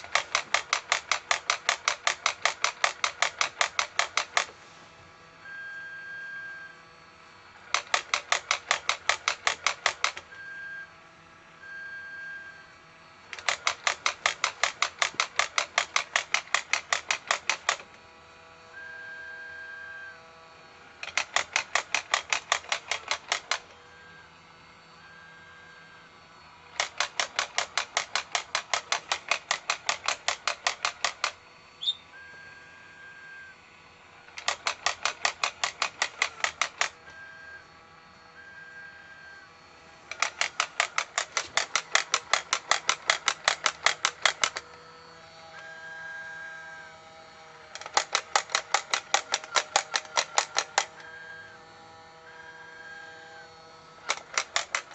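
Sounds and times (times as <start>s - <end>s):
alarm clock rapid pulses: 0.0s - 4.5s, 13.3s - 17.9s, 21.0s - 23.7s, 26.7s - 32.0s, 34.4s - 37.1s, 40.1s - 44.7s.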